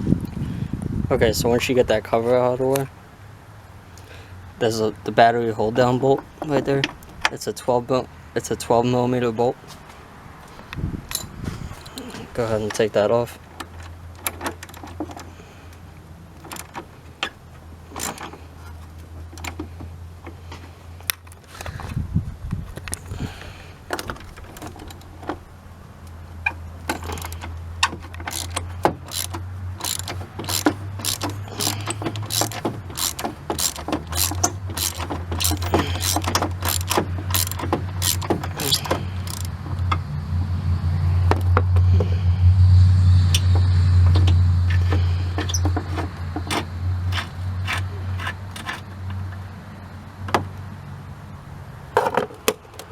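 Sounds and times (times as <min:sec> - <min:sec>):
ratchet wrench clicking: 0:26.5 - 0:40.0.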